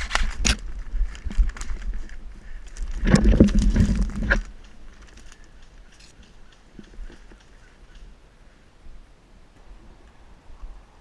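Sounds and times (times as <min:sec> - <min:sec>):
rustling of brush: 0:00.0 - 0:09.0.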